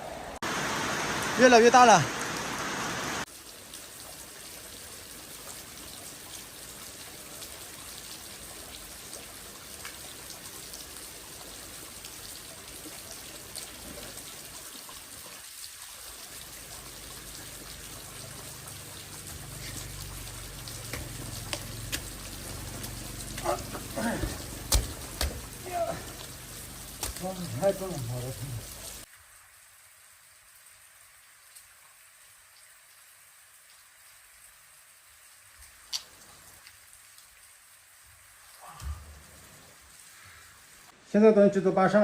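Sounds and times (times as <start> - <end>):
heavy rain: 0.0 - 41.1
water drips: 3.2 - 29.1.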